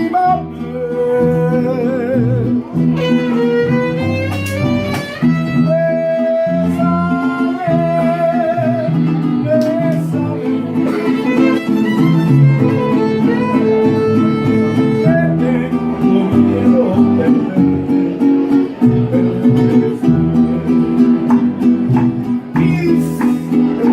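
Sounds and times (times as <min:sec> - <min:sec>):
plucked bass line: 0:00.0 - 0:23.9
strummed guitar chords: 0:00.0 - 0:23.9
violin melody with vibrato: 0:02.7 - 0:05.8, 0:10.4 - 0:17.3.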